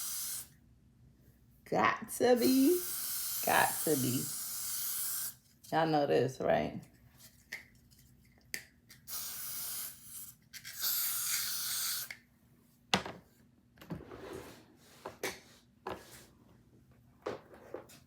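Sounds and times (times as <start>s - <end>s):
aerosol spray hissing: 0.0s - 0.5s, 2.3s - 5.4s, 9.1s - 12.2s.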